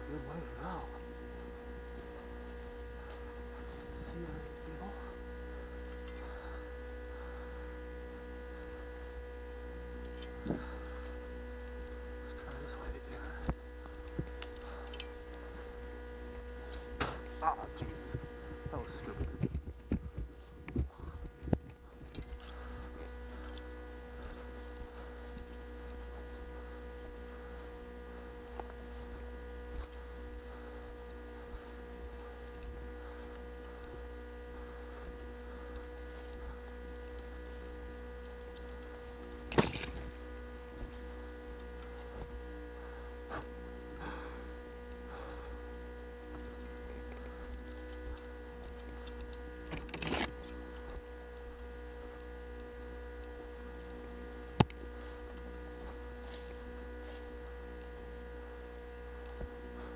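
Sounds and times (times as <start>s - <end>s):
electrical hum: 0.0s - 59.9s.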